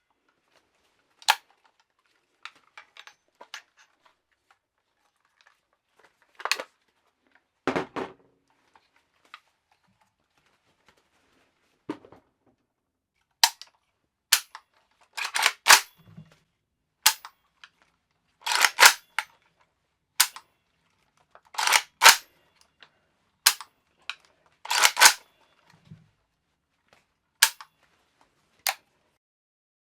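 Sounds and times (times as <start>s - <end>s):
metallic clicks of gun action: 1.2s - 1.5s, 13.4s - 13.7s, 14.4s - 14.6s, 15.2s - 16.0s, 17.1s - 17.8s, 18.4s - 19.3s, 20.2s - 20.4s, 21.6s - 22.3s, 23.5s - 23.7s, 24.7s - 25.3s, 27.4s - 27.7s.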